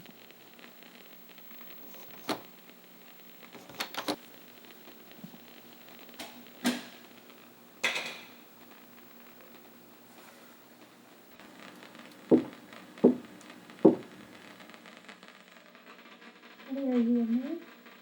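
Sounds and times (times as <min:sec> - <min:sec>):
sharp knocks and creaks: 0:12.3 - 0:13.2, 0:13.9 - 0:14.1.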